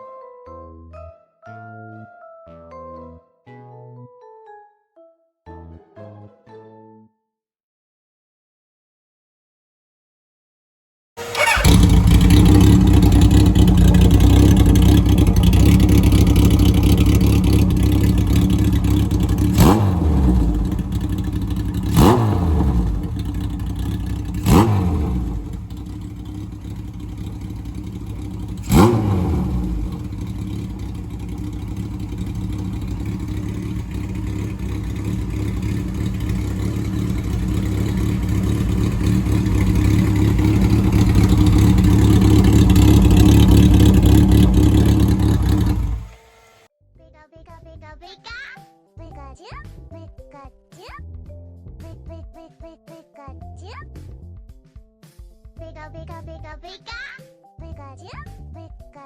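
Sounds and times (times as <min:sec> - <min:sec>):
motorcycle throttle blips: 0:11.2 - 0:46.1
motorcycle engine idling: 0:11.2 - 0:46.2.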